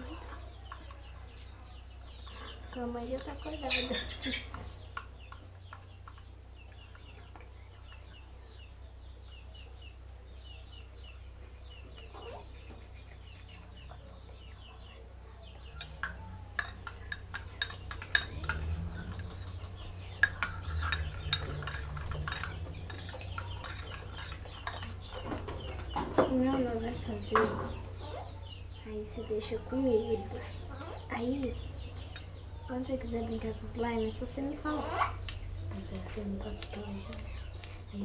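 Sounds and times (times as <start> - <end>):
chickens clucking: 0.0 - 38.0
metal spoon clinking on container: 15.8 - 24.9.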